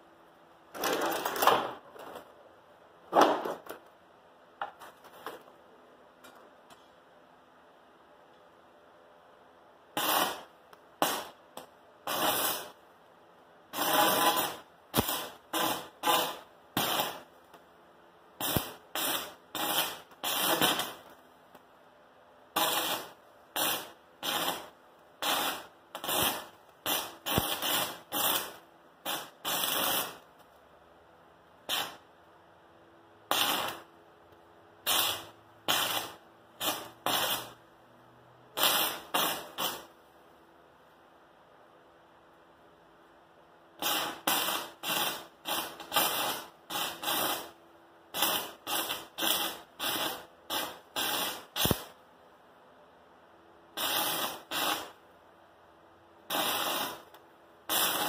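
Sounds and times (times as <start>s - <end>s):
welding arc crackling: 10.0s - 12.8s, 13.7s - 17.6s, 18.4s - 21.2s, 22.5s - 30.3s, 31.6s - 32.1s, 33.3s - 33.9s, 34.8s - 37.6s, 38.5s - 40.0s, 43.8s - 52.0s, 53.8s - 55.0s, 56.3s - 58.0s.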